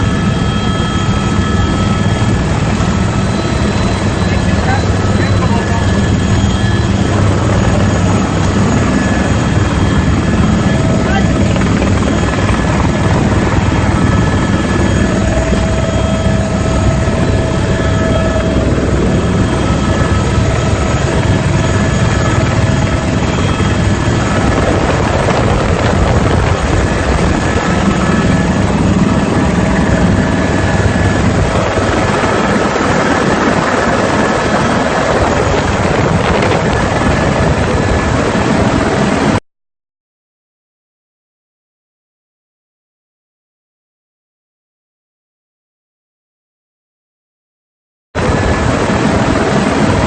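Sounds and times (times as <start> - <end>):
helicopter rotor beat: 0.0 - 39.4, 48.2 - 50.0
high turbine whine: 0.0 - 39.4, 48.2 - 50.0.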